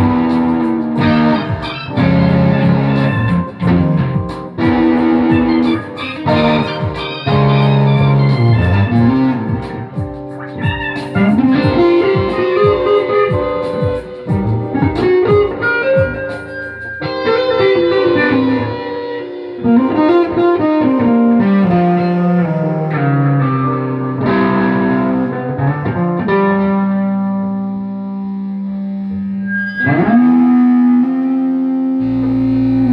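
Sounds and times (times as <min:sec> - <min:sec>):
sliding bass line: 0:00.0 - 0:17.0, 0:19.6 - 0:25.3
plucked guitar melody: 0:00.0 - 0:32.9.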